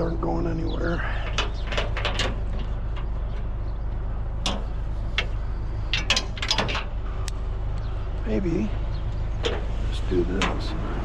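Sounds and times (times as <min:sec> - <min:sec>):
steady low hum: 0:00.0 - 0:11.0
scrap metal knocks and clanks: 0:01.1 - 0:03.8, 0:04.4 - 0:07.0.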